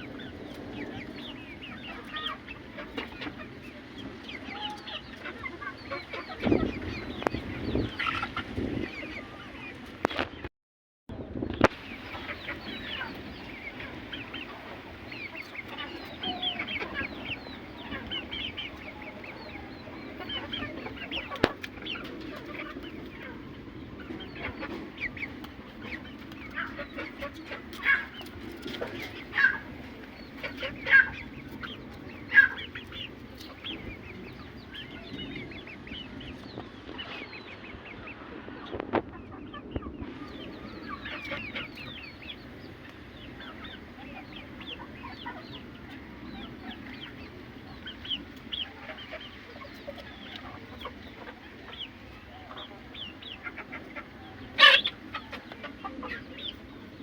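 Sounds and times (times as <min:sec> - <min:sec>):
chickens clucking: 0:00.0 - 0:10.5, 0:11.4 - 0:57.0.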